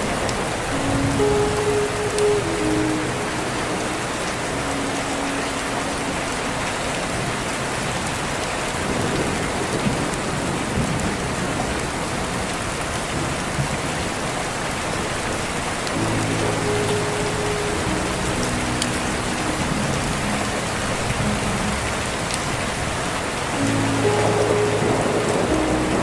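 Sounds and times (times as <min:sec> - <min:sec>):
heavy rain pattering: 0:00.0 - 0:26.0.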